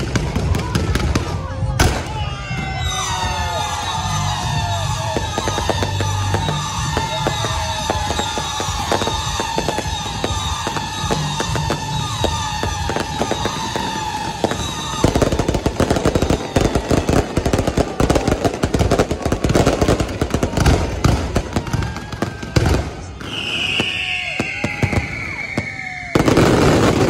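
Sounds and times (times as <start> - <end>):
fireworks crackling: 0.0 - 27.0
high whistle: 2.1 - 15.1, 23.1 - 26.6.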